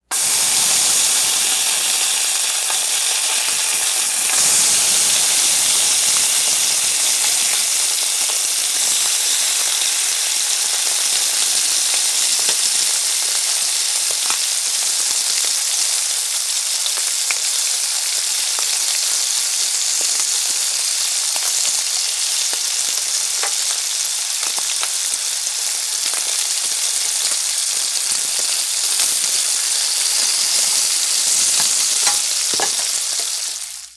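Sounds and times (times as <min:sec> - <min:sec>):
bacon sizzling in a frying pan: 0:00.1 - 0:33.9
fat popping and crackling: 0:31.2 - 0:33.4.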